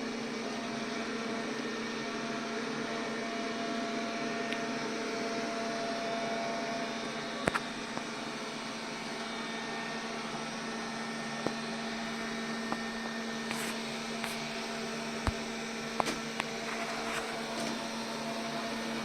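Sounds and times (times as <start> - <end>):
robot vacuum motor humming: 3.8 - 19.0.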